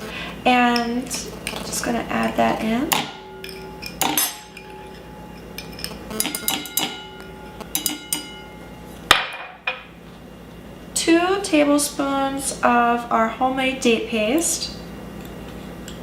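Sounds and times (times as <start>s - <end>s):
spoon clinking against bowl: 2.9s - 8.6s.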